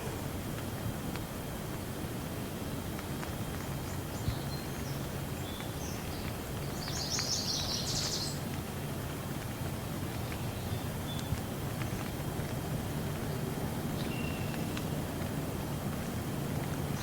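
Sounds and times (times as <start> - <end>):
steady rain: 0.0 - 17.0
small birds chirping: 3.5 - 8.5.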